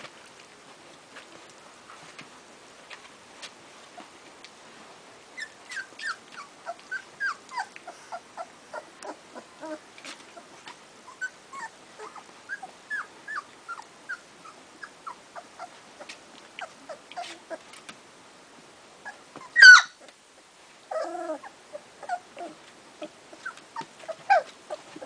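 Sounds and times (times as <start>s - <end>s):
puppies whimpering and squeaking: 5.4s - 17.8s, 19.1s - 20.1s, 20.9s - 25.0s.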